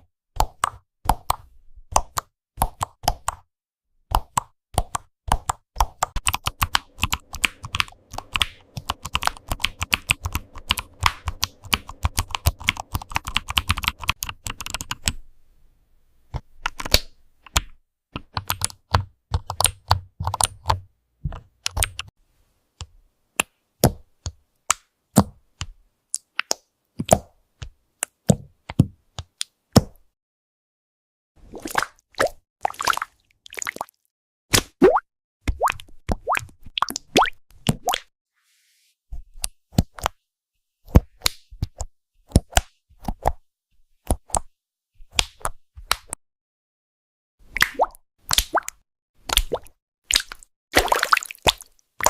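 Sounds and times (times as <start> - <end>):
keyboard typing: 4.2 - 15.2, 17.5 - 22.1.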